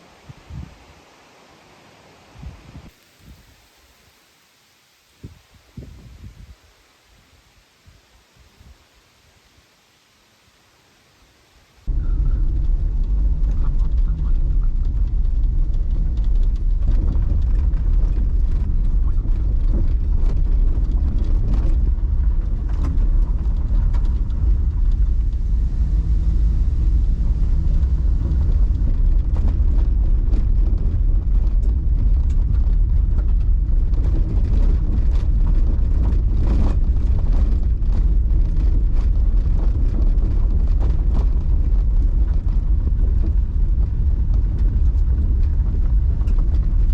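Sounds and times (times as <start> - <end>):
car road and engine rumble: 11.8 - 46.9.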